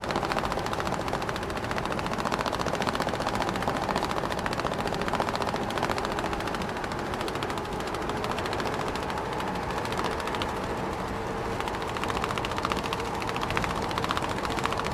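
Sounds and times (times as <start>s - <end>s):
small motor rattling: 0.0s - 14.9s.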